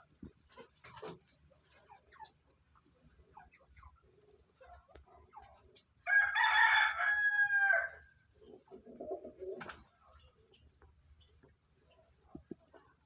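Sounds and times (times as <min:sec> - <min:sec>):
rooster crowing: 0:06.0 - 0:08.1.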